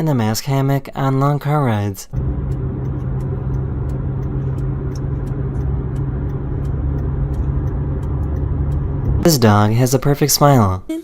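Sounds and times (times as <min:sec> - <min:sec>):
road and engine rumble in car: 0:02.1 - 0:10.6.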